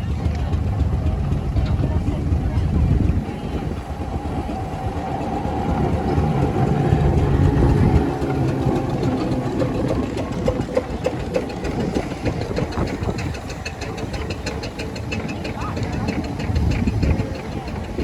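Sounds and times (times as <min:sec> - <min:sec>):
regular engine strokes: 0:00.0 - 0:18.0
steam engines low rumble: 0:00.0 - 0:18.0.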